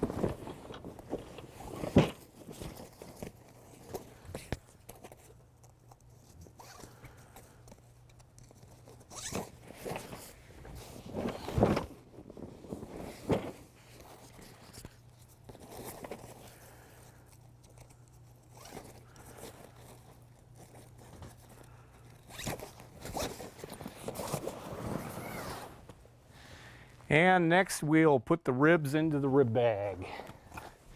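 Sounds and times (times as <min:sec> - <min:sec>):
zipper on fabric bag: 0:22.3 - 0:25.9.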